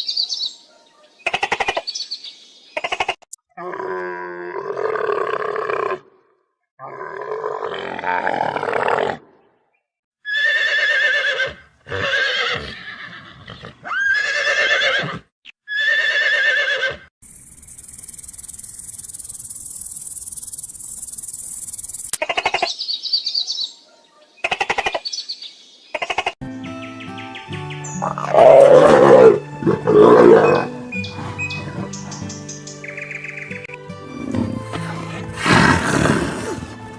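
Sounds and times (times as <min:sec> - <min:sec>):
horse whinnying: 0:10.2 - 0:17.1, 0:28.1 - 0:31.9, 0:34.1 - 0:36.8.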